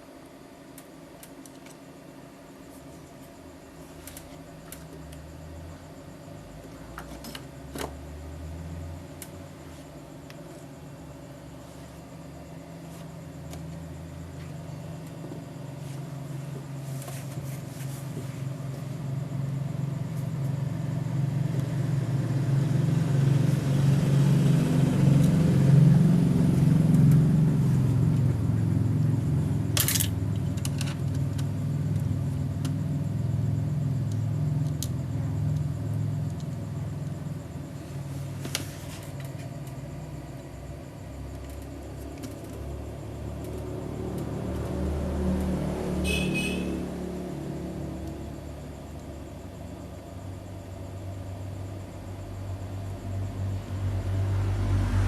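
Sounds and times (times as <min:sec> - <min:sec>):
low motor drone: 0:18.4 - 0:37.7.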